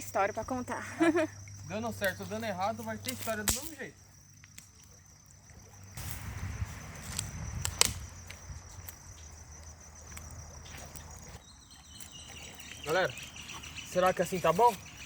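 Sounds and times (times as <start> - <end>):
insects trilling: 0.0 - 15.0
sharp clicks: 7.1 - 9.0.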